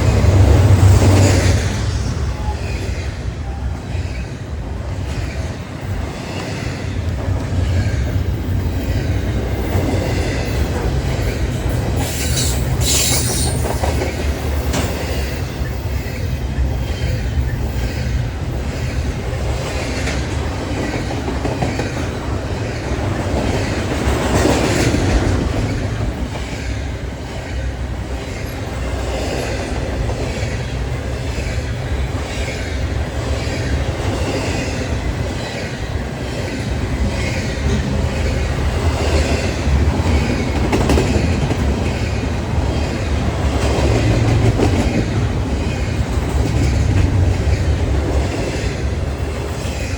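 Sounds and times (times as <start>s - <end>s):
freight train cars rumbling: 0.0s - 49.9s
high wheel squeal: 12.0s - 14.0s.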